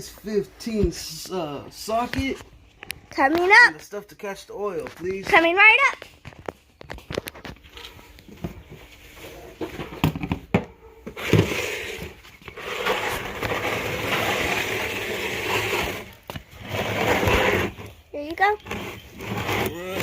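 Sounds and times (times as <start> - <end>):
steady scraping: 10.9 - 20.0.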